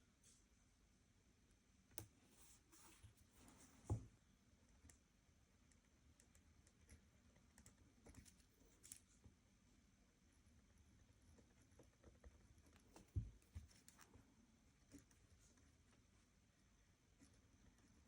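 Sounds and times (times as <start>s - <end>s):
soft thump: 3.8s - 4.1s.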